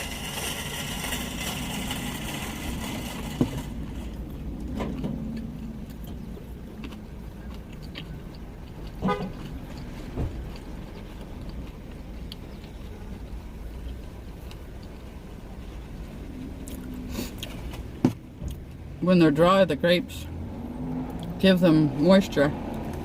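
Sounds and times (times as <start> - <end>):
vehicle rumble: 0.0 - 23.0
car horn toot: 9.0 - 9.3.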